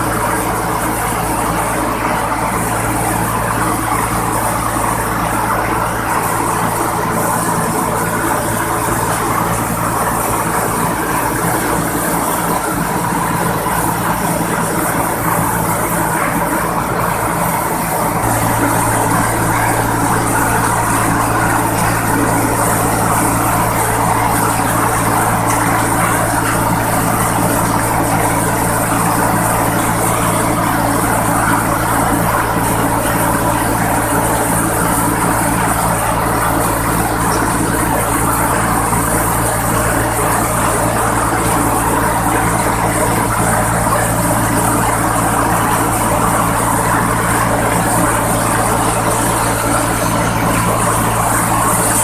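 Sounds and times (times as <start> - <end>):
milling machine engine humming: 0.0 - 52.0.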